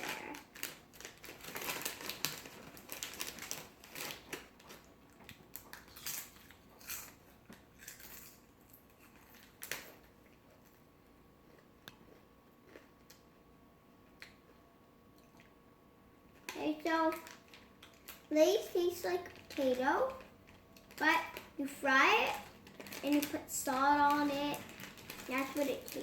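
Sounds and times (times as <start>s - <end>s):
chip bag crinkling: 0.0s - 10.8s, 16.4s - 26.0s
chips being crunched: 0.6s - 10.1s.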